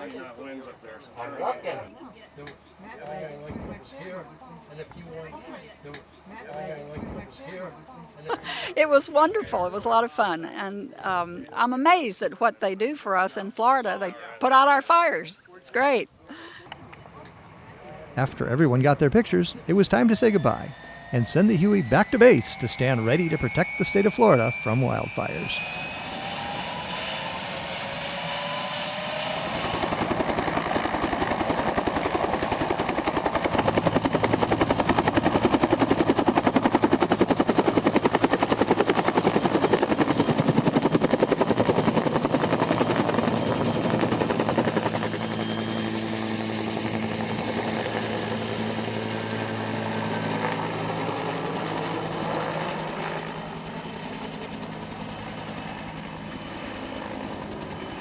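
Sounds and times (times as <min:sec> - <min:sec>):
helicopter rotor and turbine: 0:16.6 - 0:58.0.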